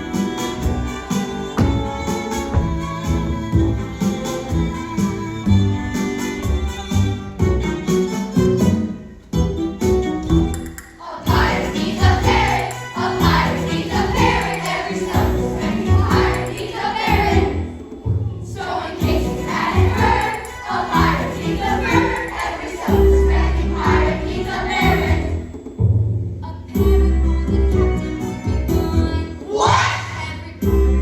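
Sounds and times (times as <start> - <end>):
instrumental backing with bass: 0.0 - 31.0
group of voices singing: 11.0 - 17.7, 18.5 - 25.4, 29.4 - 30.6.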